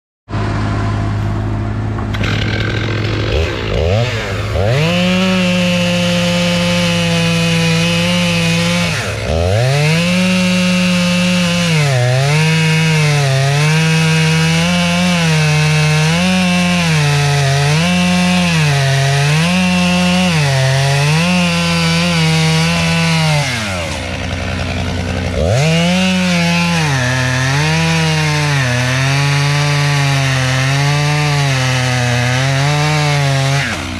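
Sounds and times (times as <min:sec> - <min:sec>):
steady lower drone: 0:00.3 - 0:05.4
chainsaw cutting wood: 0:01.9 - 0:33.9.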